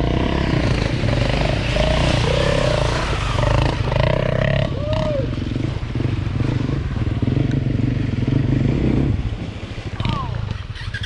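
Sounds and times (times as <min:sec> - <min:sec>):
person calling out: 0:04.6 - 0:05.3.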